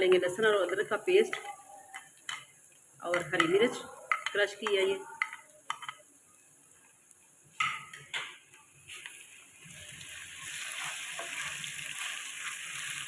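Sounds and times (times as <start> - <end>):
spoon scraping a pan: 0.0 - 6.1, 10.4 - 13.0
onions sizzling in hot fat: 0.0 - 13.0.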